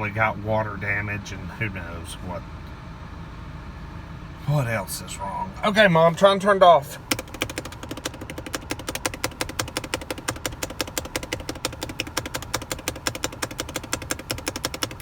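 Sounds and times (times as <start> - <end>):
car engine idling: 0.0 - 15.0
push-button switch clicking: 7.1 - 15.0.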